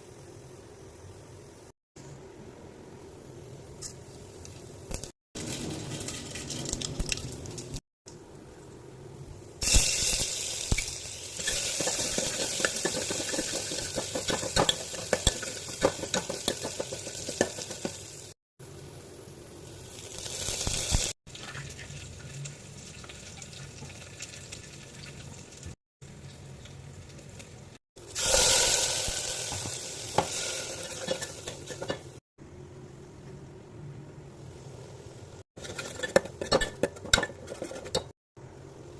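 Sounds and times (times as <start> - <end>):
food sizzling in hot oil: 9.6 - 32.2
stirring in a pan: 11.4 - 18.2, 29.2 - 32.2, 35.6 - 38.1.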